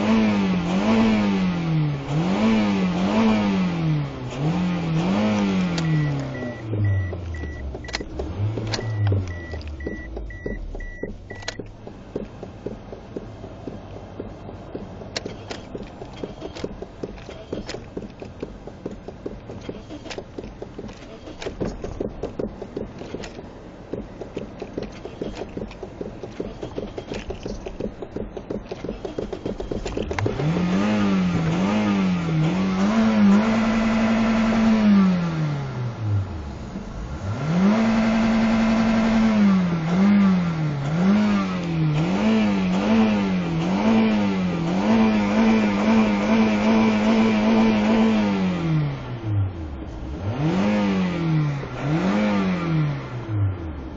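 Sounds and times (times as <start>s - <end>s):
car engine idling and revving: 0.0s - 53.9s
high pulsing beep: 5.8s - 8.0s, 8.8s - 11.6s.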